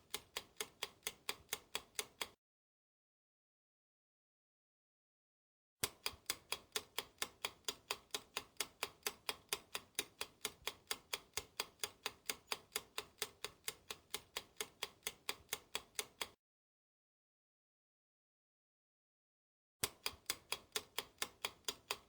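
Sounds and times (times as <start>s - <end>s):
clock ticking: 0.0s - 2.4s, 5.8s - 16.4s, 19.8s - 22.0s.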